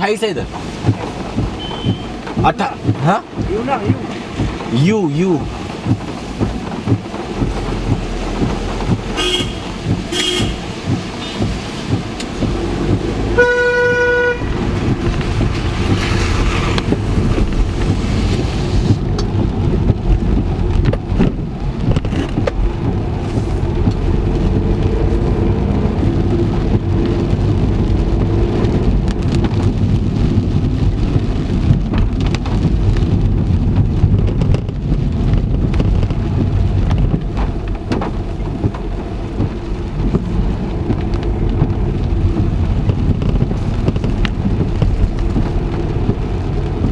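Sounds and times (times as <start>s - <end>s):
car road and engine rumble: 0.0s - 46.9s
rain on car: 0.0s - 46.9s
car horn toot: 1.6s - 2.2s, 9.1s - 11.4s, 13.3s - 14.6s.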